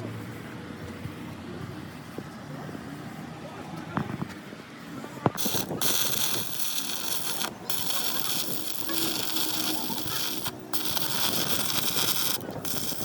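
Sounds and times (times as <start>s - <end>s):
loud steady hiss: 5.4s - 13.0s.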